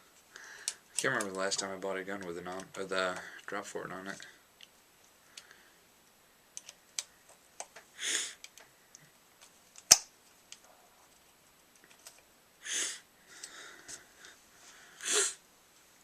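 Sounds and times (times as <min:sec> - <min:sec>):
short hissing puffs: 0:08.0 - 0:08.4, 0:12.6 - 0:13.1.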